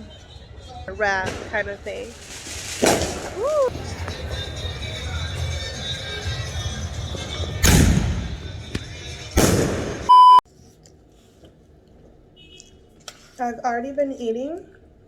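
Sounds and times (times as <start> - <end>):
fireworks bangs: 0.4 - 10.1
short electronic beep: 10.1 - 10.4.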